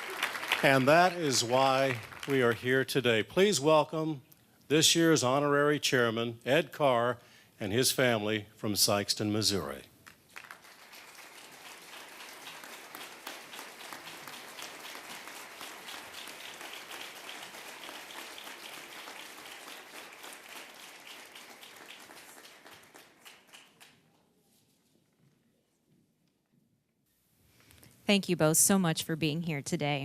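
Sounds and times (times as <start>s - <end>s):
audience applauding: 0.0s - 2.8s, 10.0s - 24.1s.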